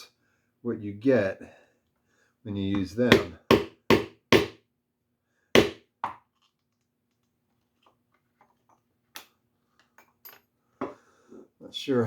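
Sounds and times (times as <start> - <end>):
mallet striking chisel: 2.8 - 4.6, 5.6 - 5.8.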